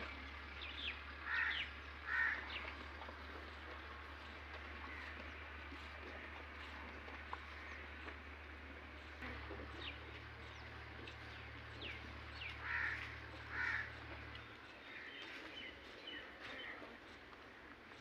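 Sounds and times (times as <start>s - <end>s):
birds chirping: 0.0s - 18.0s
low hum: 0.0s - 18.0s
harsh bird calls: 0.6s - 2.6s, 11.3s - 16.8s.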